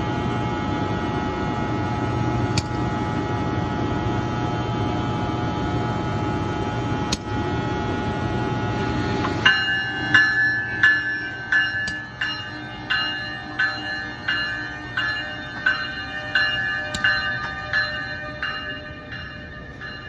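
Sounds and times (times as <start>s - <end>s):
electric locomotive humming: 0.0s - 20.0s
bell ringing: 9.4s - 20.0s.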